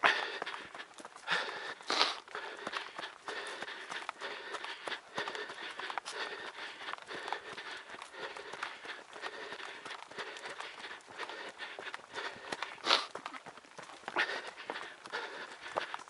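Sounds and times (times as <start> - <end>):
footsteps on dirt trail: 0.0 - 16.0.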